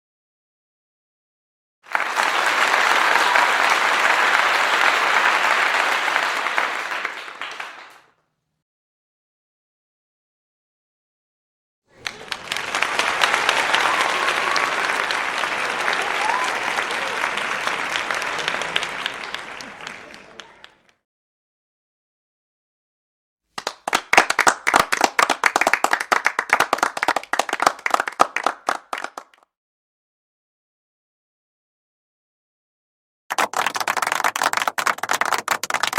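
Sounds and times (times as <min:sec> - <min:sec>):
crowd applauding: 0:01.9 - 0:08.2, 0:11.9 - 0:21.0, 0:23.6 - 0:29.4, 0:33.3 - 0:35.9
hands clapping: 0:01.9 - 0:08.2, 0:11.9 - 0:21.0, 0:23.6 - 0:29.5, 0:33.3 - 0:35.9.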